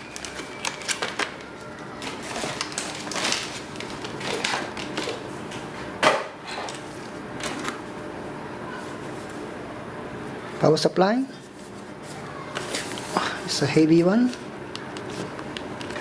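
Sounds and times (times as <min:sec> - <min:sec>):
packaging rustling: 0:00.0 - 0:05.3.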